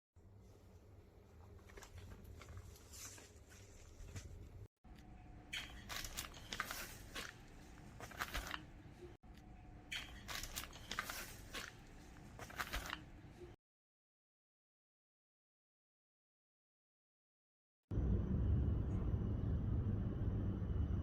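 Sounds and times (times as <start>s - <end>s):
crinkling with clicks and crackles: 1.3s - 13.6s.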